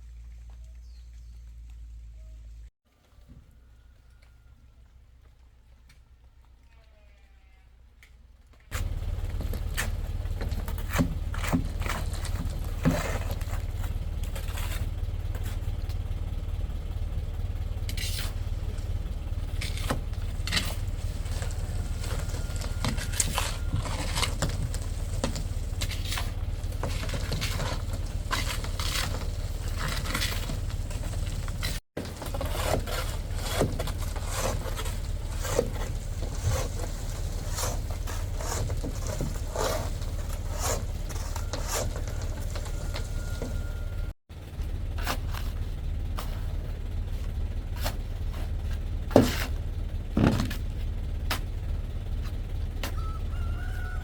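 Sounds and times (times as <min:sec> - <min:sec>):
bucket scraping soil and stones: 0:08.7 - 0:16.2, 0:17.8 - 0:44.1, 0:44.8 - 0:51.4
excavator diesel engine running: 0:08.7 - 0:54.0.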